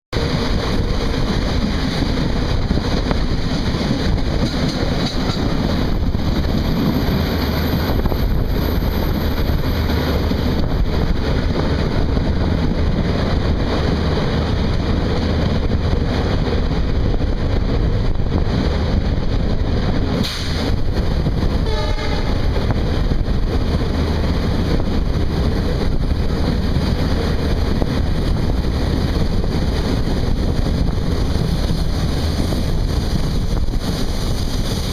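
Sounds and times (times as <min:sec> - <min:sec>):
train wheels rumbling on rails: 0:00.1 - 0:34.9
locomotive horn: 0:21.6 - 0:22.6.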